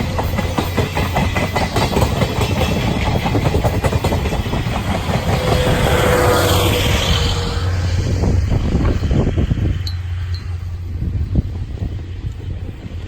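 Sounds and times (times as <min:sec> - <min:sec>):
train rumble: 0:00.0 - 0:13.0
train wheels clattering over rail joints: 0:00.0 - 0:13.0.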